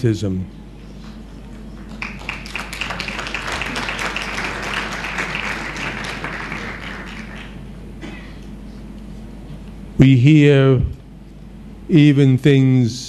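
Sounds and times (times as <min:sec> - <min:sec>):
audience applauding: 0:01.6 - 0:07.7.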